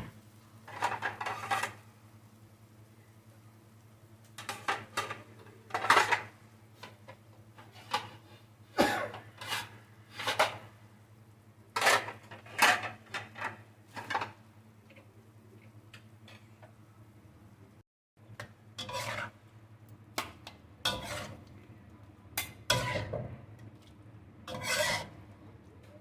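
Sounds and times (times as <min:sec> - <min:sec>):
utensils knocking and scraping pan: 0:00.7 - 0:01.8, 0:04.4 - 0:07.0, 0:07.6 - 0:10.7, 0:11.8 - 0:14.4, 0:18.8 - 0:19.4, 0:20.2 - 0:21.4, 0:22.4 - 0:23.3, 0:24.5 - 0:25.2.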